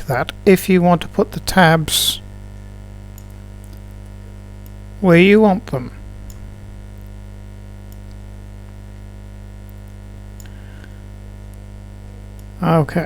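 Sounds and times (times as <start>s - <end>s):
electrical mains hum: 0.0s - 13.0s
faint ticks: 2.5s - 4.8s, 7.9s - 8.8s, 9.6s - 11.7s.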